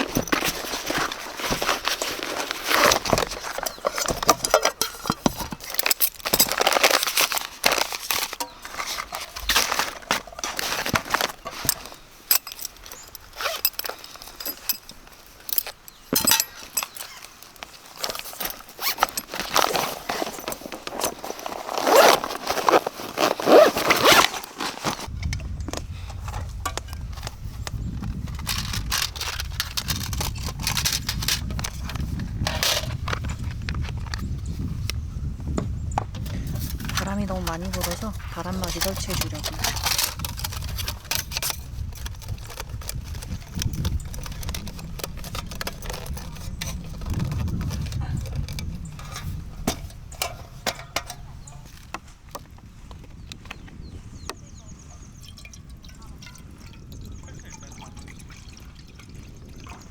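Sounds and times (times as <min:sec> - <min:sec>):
camping gear rustling and clicking: 0:00.0 - 0:59.9
wind rumble on microphone: 0:25.0 - 0:59.9.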